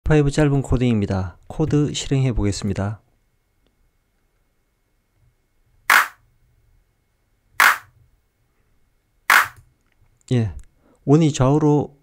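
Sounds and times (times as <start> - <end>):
short sharp sound effect: 5.9 - 6.2, 7.6 - 7.9.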